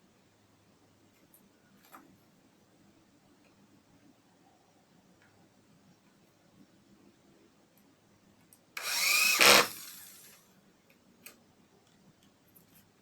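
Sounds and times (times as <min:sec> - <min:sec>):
hand drill spinning saw blade: 0:08.8 - 0:10.4.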